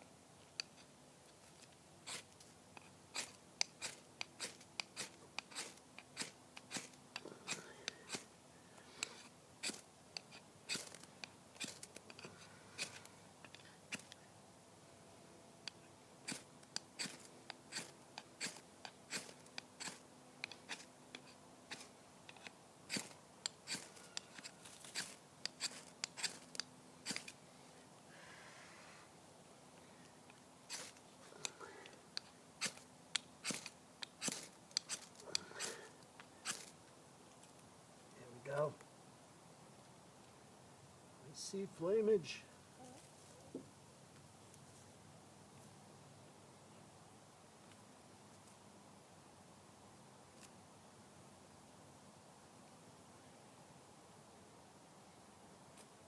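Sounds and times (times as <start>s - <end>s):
knife scraping ferro rod: 2.0s - 8.3s, 9.0s - 14.2s, 15.7s - 27.4s, 30.7s - 31.6s, 32.2s - 32.8s, 33.4s - 35.8s, 36.4s - 36.7s.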